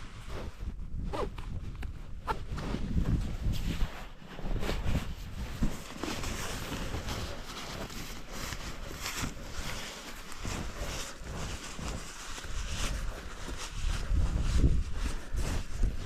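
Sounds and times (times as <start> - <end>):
wind buffeting microphone: 0.0 - 5.7, 10.4 - 16.0
rustling and scraping: 0.0 - 16.0.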